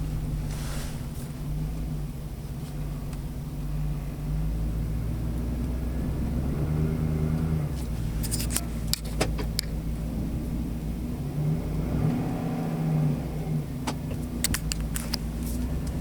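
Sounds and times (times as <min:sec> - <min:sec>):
engine running with knock: 0:00.0 - 0:12.5.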